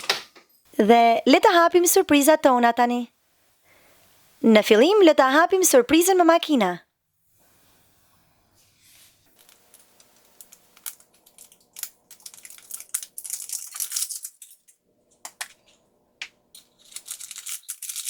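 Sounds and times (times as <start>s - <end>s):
wrapper crinkling and tearing: 10.2s - 14.8s, 16.6s - 18.0s.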